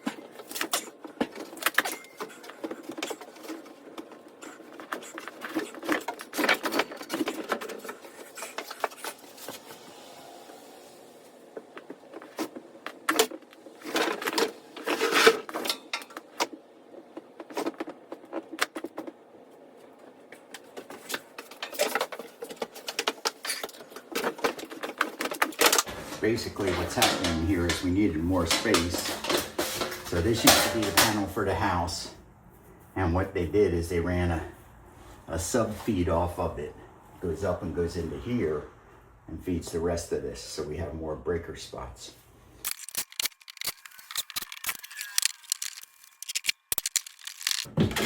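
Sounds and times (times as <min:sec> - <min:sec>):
cable rustling and scraping: 0:00.0 - 0:10.2, 0:11.1 - 0:32.8, 0:42.7 - 0:48.0
clicks and knocks: 0:21.4 - 0:31.4.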